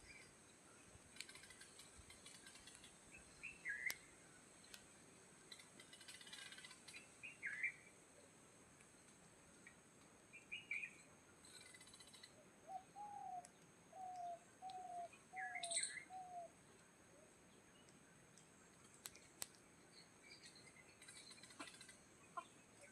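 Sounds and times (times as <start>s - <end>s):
faint bird calls: 0.0s - 4.8s, 5.4s - 8.0s, 9.6s - 18.0s, 18.7s - 22.9s
high bird chirps: 14.0s - 16.5s.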